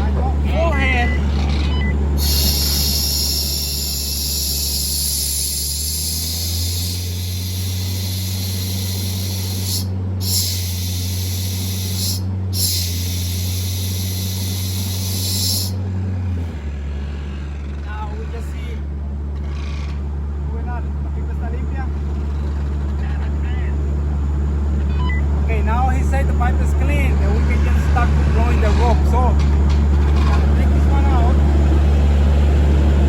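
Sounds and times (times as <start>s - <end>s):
air compressor drone: 0.0s - 33.0s
compressed air hissing: 2.2s - 15.8s.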